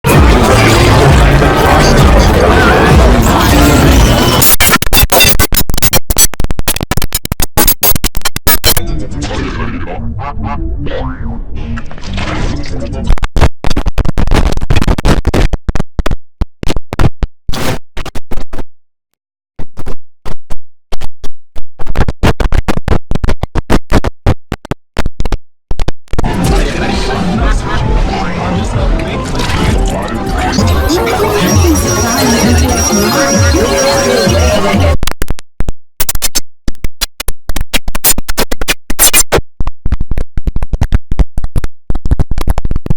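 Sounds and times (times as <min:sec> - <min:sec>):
stuttering digital sound fragments: 0:00.1 - 0:08.8, 0:28.9 - 0:35.0
glitchy stuttering computer sound: 0:00.1 - 0:10.6, 0:11.9 - 0:16.1, 0:21.8 - 0:35.2, 0:37.0 - 0:42.9.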